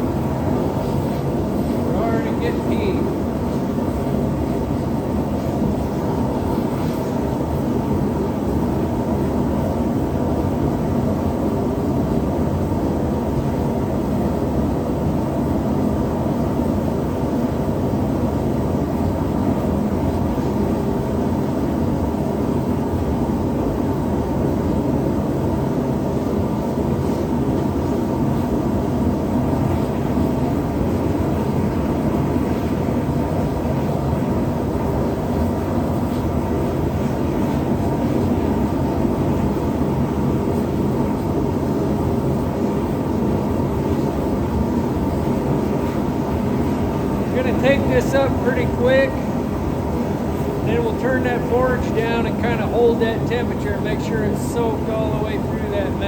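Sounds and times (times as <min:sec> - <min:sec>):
gas forge rushing: 0:00.0 - 0:56.0.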